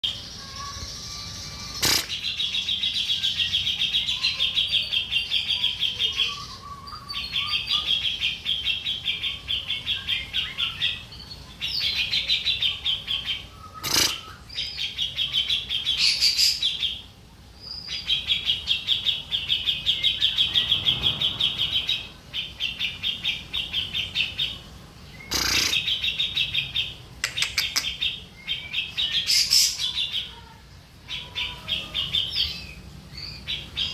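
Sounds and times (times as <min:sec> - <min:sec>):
bird singing rapid high chatter: 0:00.0 - 0:33.9
sharp clicks: 0:01.8 - 0:02.2, 0:27.2 - 0:27.9.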